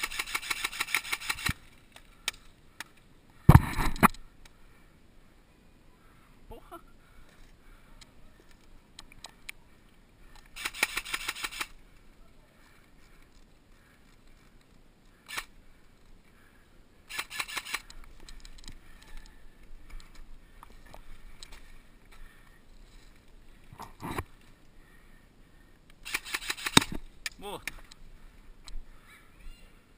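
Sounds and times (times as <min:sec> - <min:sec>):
airsoft gun full-auto bursts: 0:00.0 - 0:01.6, 0:10.6 - 0:11.8, 0:17.1 - 0:17.9, 0:26.0 - 0:27.0.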